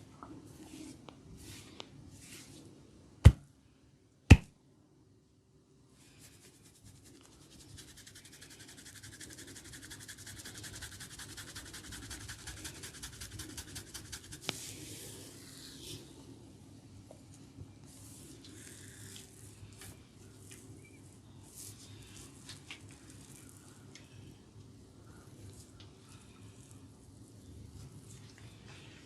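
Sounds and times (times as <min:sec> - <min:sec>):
fingers scratching scalp and hair: 0:06.3 - 0:14.6.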